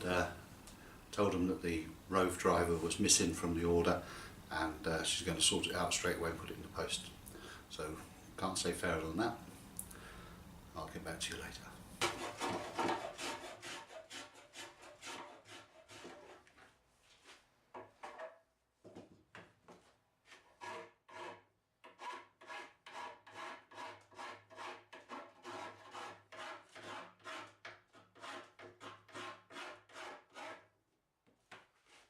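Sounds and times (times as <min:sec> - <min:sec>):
hand tool rasping wood: 0:12.0 - 0:16.4, 0:20.3 - 0:30.6.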